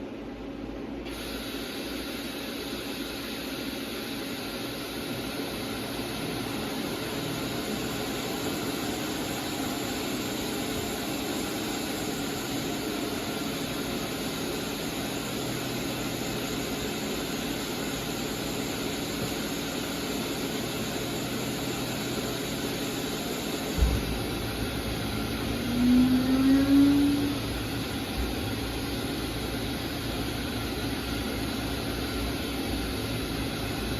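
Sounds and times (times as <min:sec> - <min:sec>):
machine running with hum and hiss: 0:00.0 - 0:33.9
loud rising whine: 0:02.8 - 0:33.9
machine thump: 0:23.7 - 0:25.2, 0:28.1 - 0:28.6.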